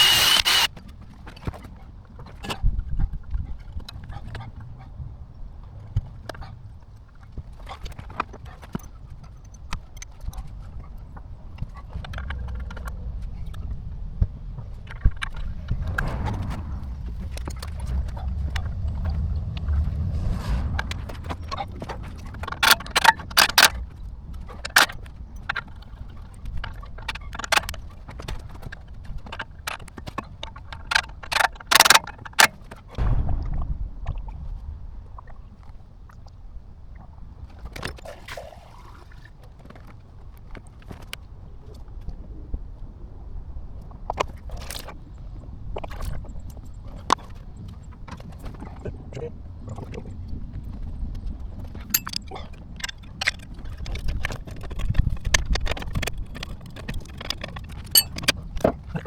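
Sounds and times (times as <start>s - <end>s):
hand tools clicking and knocking: 0.0s - 0.7s, 22.5s - 23.8s, 30.8s - 32.5s, 51.9s - 58.4s
rattling scrapes: 0.0s - 0.7s, 15.2s - 23.9s, 51.9s - 59.0s
low rumble: 12.0s - 24.2s, 33.0s - 37.6s.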